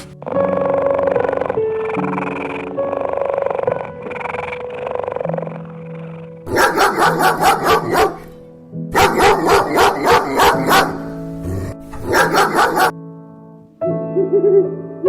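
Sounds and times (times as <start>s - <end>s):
background music: 0.0s - 15.0s
dog barking: 6.5s - 13.0s.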